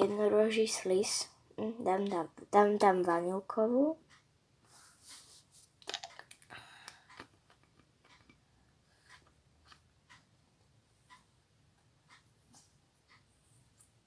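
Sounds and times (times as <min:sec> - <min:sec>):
bottle handling clicks and rustles: 0:05.8 - 0:06.5.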